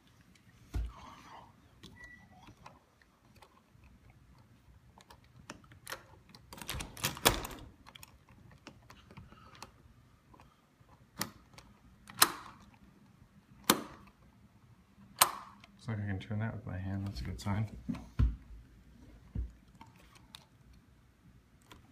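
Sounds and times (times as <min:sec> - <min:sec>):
lock hardware clicks: 0:11.1 - 0:12.8, 0:13.6 - 0:14.2, 0:15.1 - 0:15.8.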